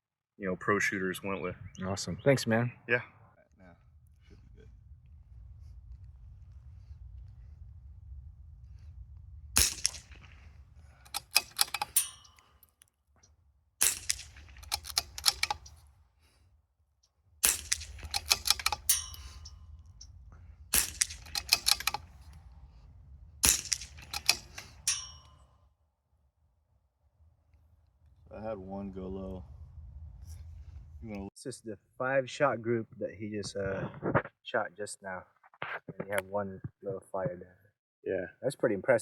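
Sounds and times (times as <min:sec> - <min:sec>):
rifle shots: 0:09.6 - 0:12.1, 0:13.8 - 0:15.7, 0:17.4 - 0:19.5, 0:20.7 - 0:22.2, 0:23.4 - 0:25.0
rifle bolt clicking: 0:11.1 - 0:12.4, 0:13.8 - 0:15.8, 0:17.5 - 0:19.6, 0:20.8 - 0:22.4, 0:23.4 - 0:25.1.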